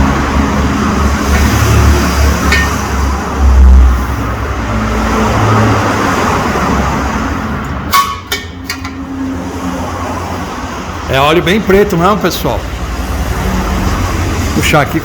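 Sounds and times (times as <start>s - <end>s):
rushing workshop noise: 0.0s - 6.2s.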